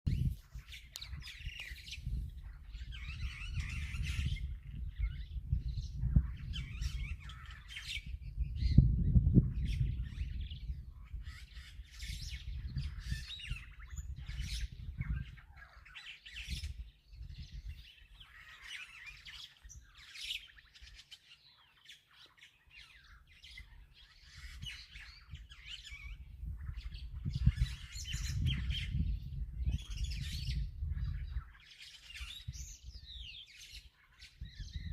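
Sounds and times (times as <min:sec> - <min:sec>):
wild birds chirping: 0:00.1 - 0:34.9.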